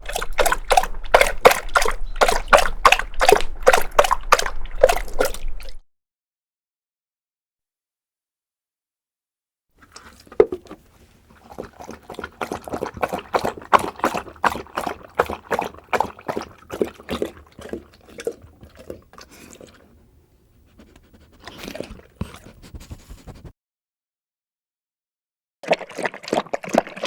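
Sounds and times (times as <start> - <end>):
dog lapping water: 0.0 - 5.8, 9.8 - 20.2, 20.8 - 23.5, 25.6 - 27.0.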